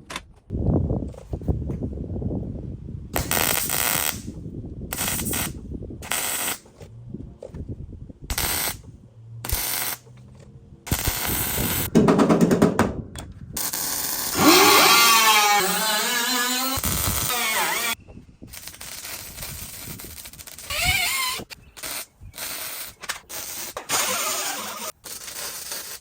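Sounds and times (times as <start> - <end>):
welder crackling bursts: 3.2 - 6.7, 8.3 - 8.8, 9.4 - 10.1, 10.9 - 11.9, 13.6 - 26.0.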